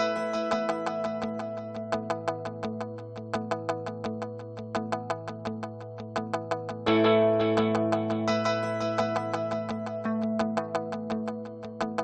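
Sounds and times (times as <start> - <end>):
plucked notes run: 6.9 - 9.2
sustained chords: 6.9 - 10.1.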